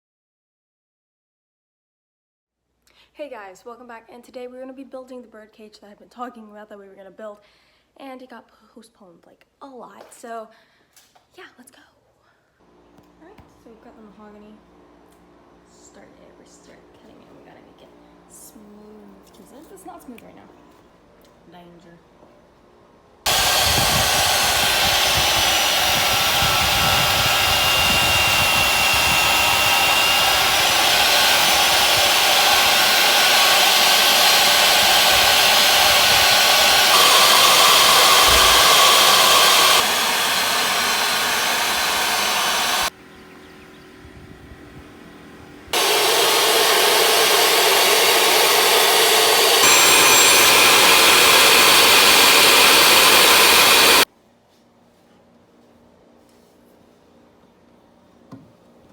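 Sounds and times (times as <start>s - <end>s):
electric power tool on wood: 23.3s - 42.9s, 45.7s - 54.1s.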